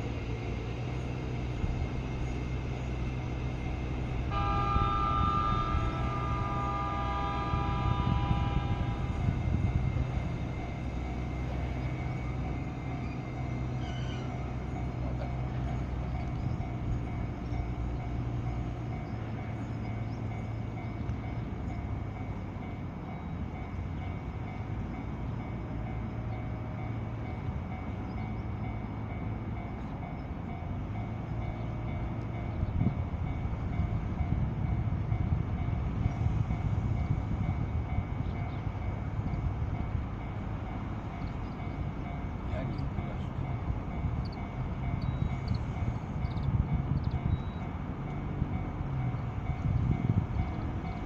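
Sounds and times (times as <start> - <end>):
electric train passing slowly: 0.0 - 51.0
hum of motors and wheels on rails: 0.0 - 51.0.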